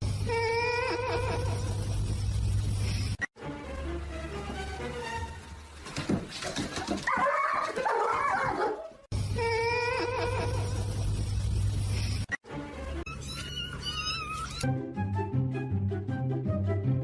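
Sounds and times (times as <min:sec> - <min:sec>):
dog whining and yipping: 0:13.1 - 0:14.7.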